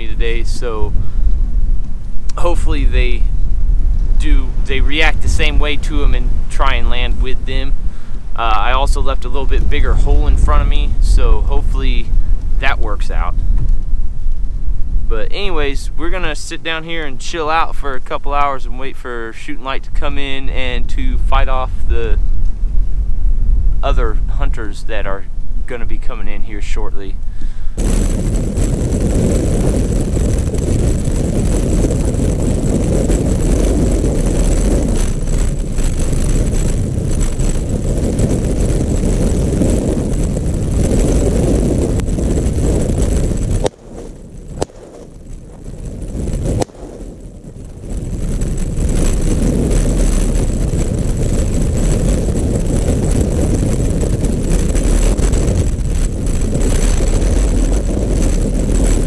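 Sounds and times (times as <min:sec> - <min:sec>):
wind buffeting microphone: 0:00.0 - 0:59.0.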